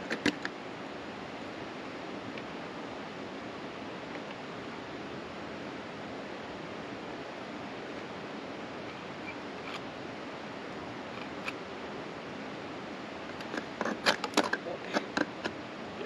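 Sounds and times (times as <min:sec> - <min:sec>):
steady rushing noise: 0:00.0 - 0:16.0.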